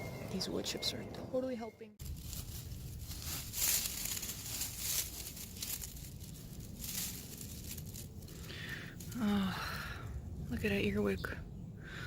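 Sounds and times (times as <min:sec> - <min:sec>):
hands rummaging through woodchips: 0:02.0 - 0:09.7.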